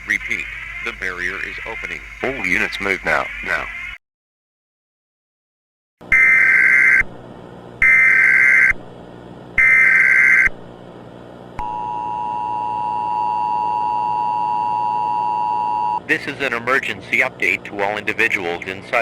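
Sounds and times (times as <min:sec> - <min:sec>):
faint static and hum: 0:00.0 - 0:04.0, 0:06.1 - 0:19.0
screeching data bursts: 0:00.0 - 0:04.0.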